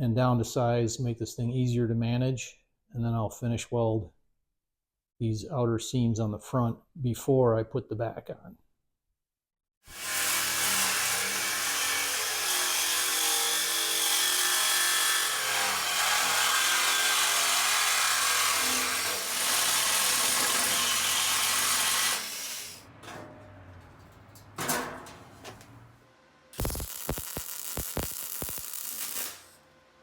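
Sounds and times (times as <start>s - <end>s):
power tool cutting sheet steel: 9.9s - 22.9s, 26.6s - 29.6s.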